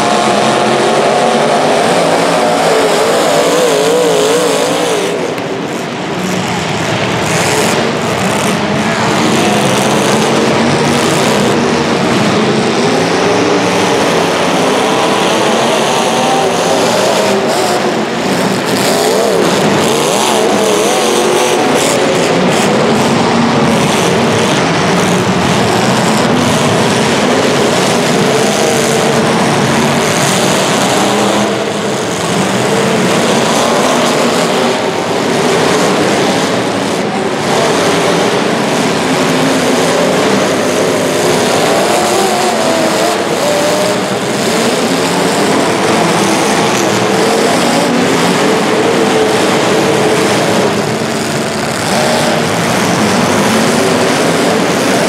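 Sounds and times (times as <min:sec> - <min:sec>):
racing engines revving: 0:00.0 - 0:55.0.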